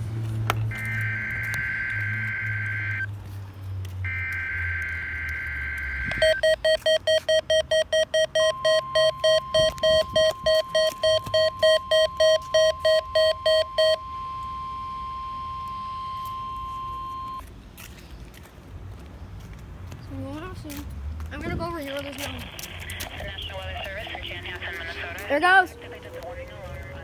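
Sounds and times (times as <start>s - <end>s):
alarm beeping: 0.7s - 3.1s, 4.1s - 17.4s
steady warning alarm tone: 0.7s - 3.1s, 4.0s - 17.4s.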